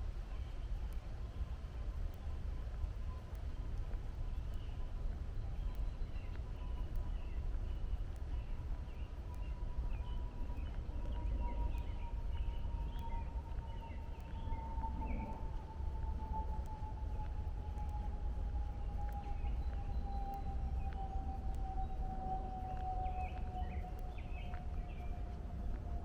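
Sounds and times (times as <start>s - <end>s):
small birds chirping: 4.1s - 16.0s, 21.8s - 25.8s.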